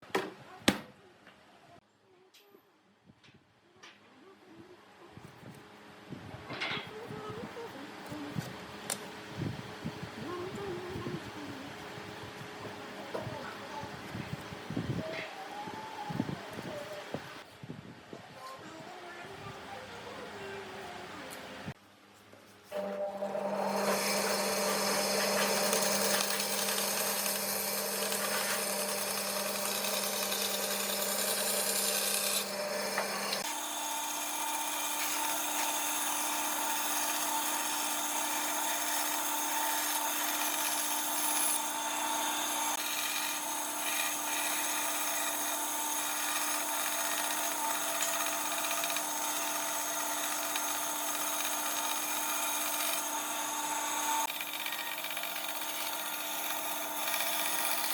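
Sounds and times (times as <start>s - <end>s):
power tool running on wood: 22.7s - 57.9s.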